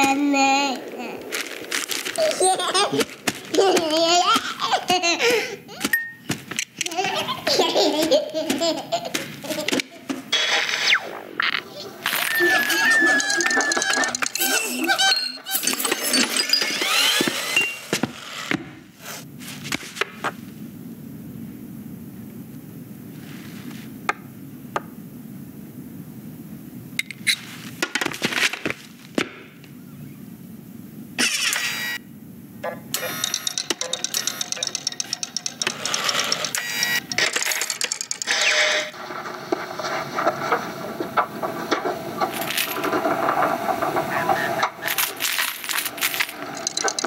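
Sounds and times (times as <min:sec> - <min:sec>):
rustling noise: 0:00.0 - 0:05.0, 0:19.0 - 0:20.7, 0:23.1 - 0:24.0, 0:27.3 - 0:29.2, 0:38.9 - 0:46.5
crackling clattering noises: 0:00.0 - 0:05.2, 0:05.8 - 0:18.6, 0:32.9 - 0:47.0
small clicks taps and rattles: 0:33.2 - 0:36.6, 0:45.9 - 0:47.0.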